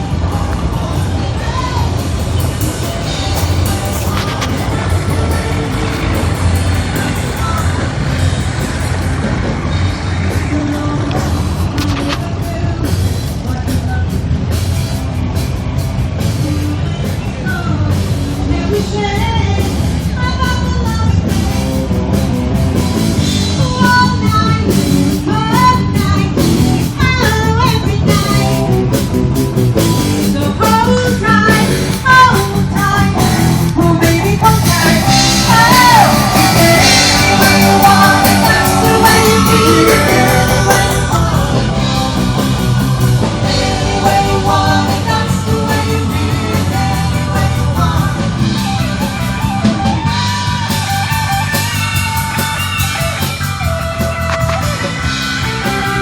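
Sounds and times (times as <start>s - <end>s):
person singing: 0.0s - 8.4s, 29.8s - 49.2s
drum kit: 0.0s - 56.0s
electric guitar: 0.0s - 56.0s.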